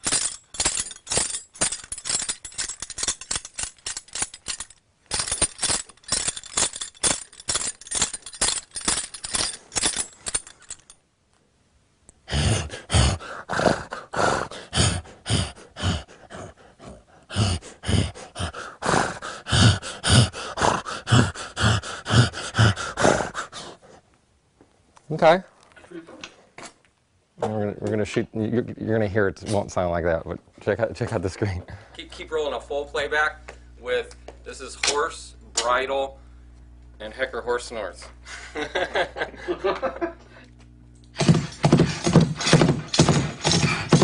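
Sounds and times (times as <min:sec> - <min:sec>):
horse bridle jingling: 0:00.0 - 0:11.0, 0:41.2 - 0:44.0.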